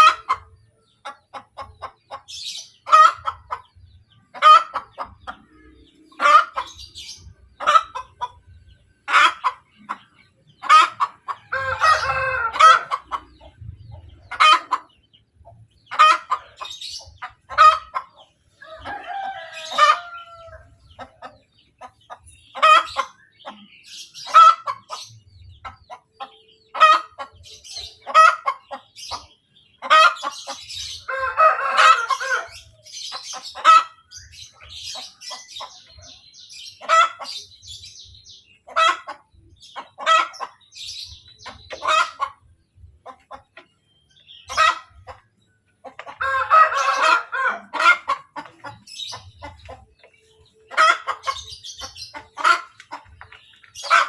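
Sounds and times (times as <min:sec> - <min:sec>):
hen cackling: 0:00.0 - 0:54.0.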